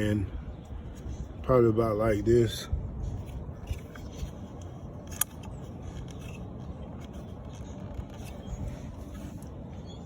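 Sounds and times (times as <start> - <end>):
steady low rumble: 0.0 - 10.0
tools scraping and handling: 3.1 - 9.6.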